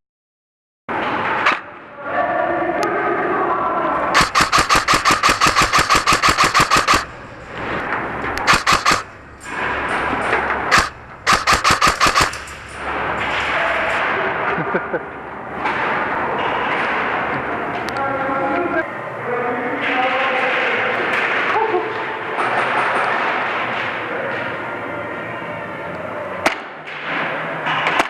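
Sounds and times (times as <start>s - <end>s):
airsoft gun firing rapidly: 4.2s - 7.1s, 8.4s - 9.1s, 10.7s - 12.4s.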